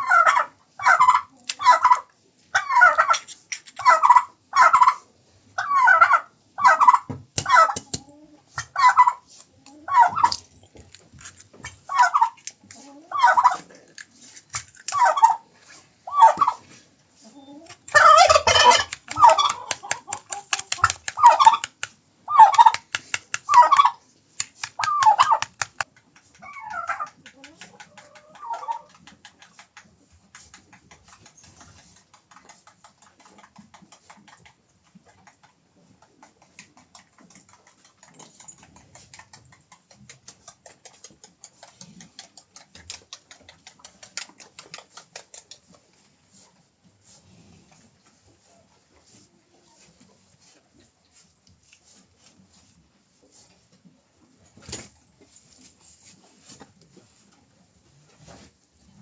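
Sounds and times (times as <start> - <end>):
poultry calling: 5.6 - 7.9, 8.6 - 9.3, 9.9 - 10.4, 14.9 - 21.7, 22.3 - 22.8, 23.4 - 24.0, 24.7 - 25.6, 26.4 - 27.2.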